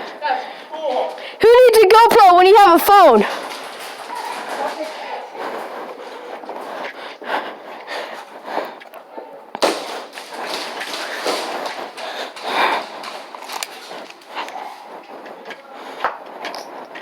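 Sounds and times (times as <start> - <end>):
rustling movement: 0.0 - 17.0
sharp crack: 3.2 - 5.7, 9.6 - 15.3
small knocks and clicks: 9.6 - 14.7.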